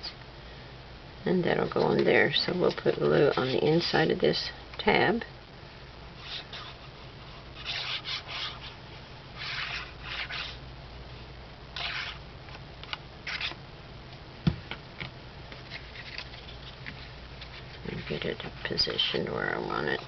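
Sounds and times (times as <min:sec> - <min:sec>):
paper rustling: 0:15.6 - 0:18.3.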